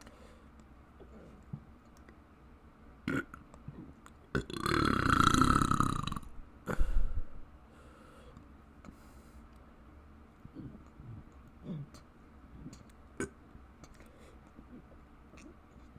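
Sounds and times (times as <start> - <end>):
person burping: 3.1 - 7.0.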